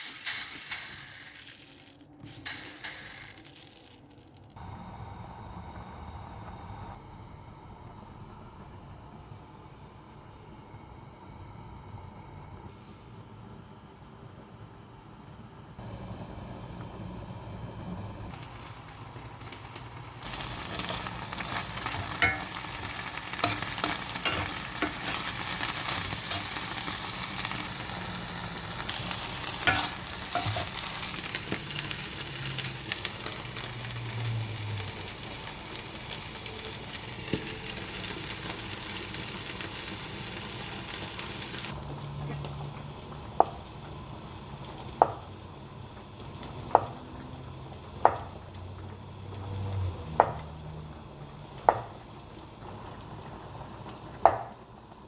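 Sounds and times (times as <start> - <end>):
food sizzling in hot oil: 0.0 - 4.9, 18.3 - 55.0
sharp taps on pan: 54.2 - 54.6.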